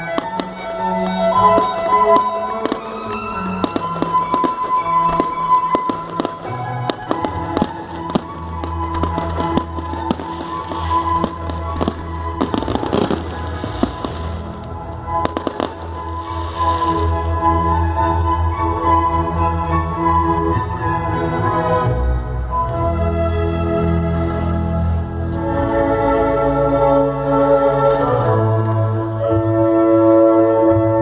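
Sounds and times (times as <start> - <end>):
fireworks bangs and crackles: 0.0 - 18.3
music: 0.0 - 31.0.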